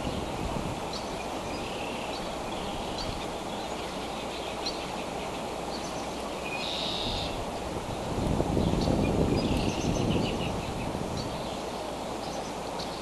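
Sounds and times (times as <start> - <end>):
faint bird chirps: 0.9 - 7.4
held high bird call: 6.4 - 7.4.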